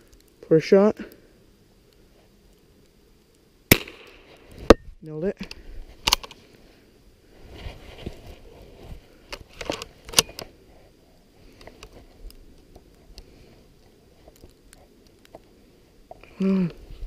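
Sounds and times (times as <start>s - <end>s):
rifle action clicks and rattles: 5.4s - 6.4s, 9.3s - 10.5s.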